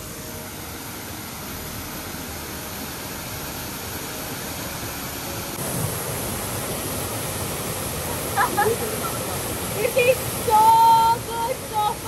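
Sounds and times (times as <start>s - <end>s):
waterfall rushing: 5.2s - 12.0s.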